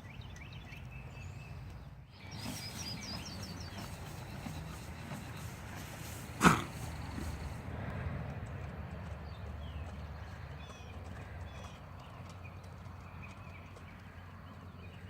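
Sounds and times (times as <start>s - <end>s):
small bird chirping: 0.0s - 7.6s
outdoor background noise: 0.0s - 15.0s
foal snorting: 2.3s - 7.6s.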